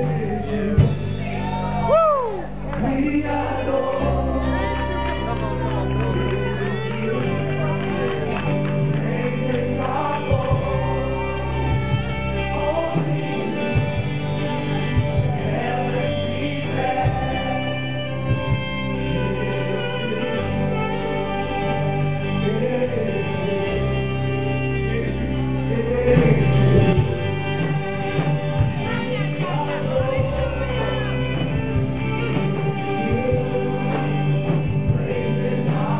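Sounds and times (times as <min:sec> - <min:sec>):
group singing praise song: 0:00.0 - 0:35.9
sustained instrumental chords: 0:00.0 - 0:35.9.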